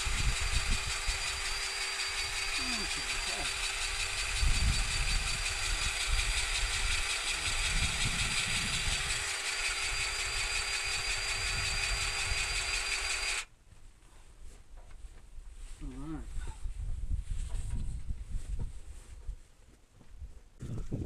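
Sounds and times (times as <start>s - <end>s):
engine idling: 0.0s - 13.4s.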